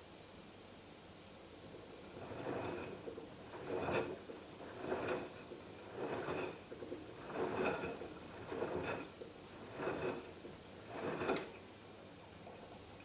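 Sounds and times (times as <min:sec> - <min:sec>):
washing machine drum tumbling laundry: 0:01.6 - 0:11.7.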